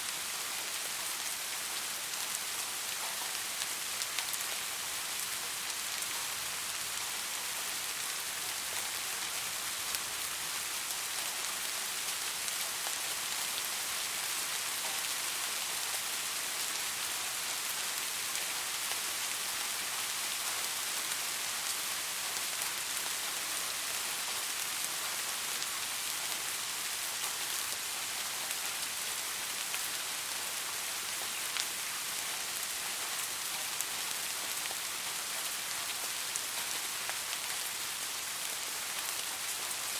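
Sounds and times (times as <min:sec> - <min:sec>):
soft rain patter: 0:00.0 - 0:39.9.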